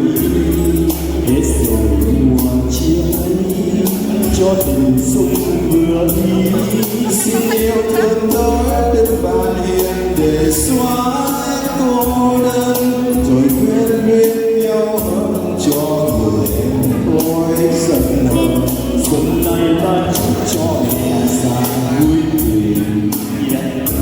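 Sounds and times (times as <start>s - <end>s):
held melody line: 0.0s - 24.0s
pop backing music: 0.0s - 24.0s
person singing held notes: 6.4s - 8.8s.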